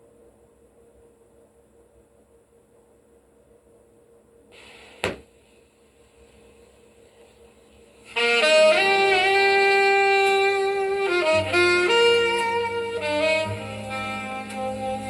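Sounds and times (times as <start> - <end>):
saxophone playing held notes: 8.1 - 15.0
bass line: 8.4 - 15.0.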